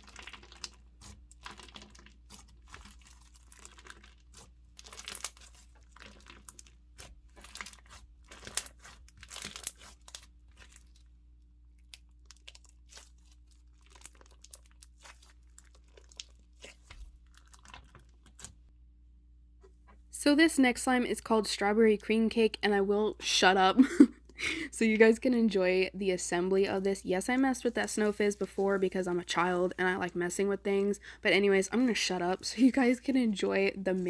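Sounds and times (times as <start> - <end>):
slime crackling and popping: 0.0 - 11.1, 11.7 - 18.7.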